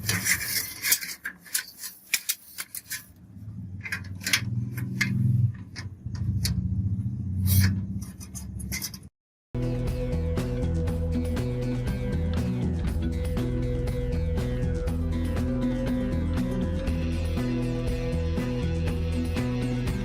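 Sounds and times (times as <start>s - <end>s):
hardware clicks and knocks: 3.8s - 6.6s.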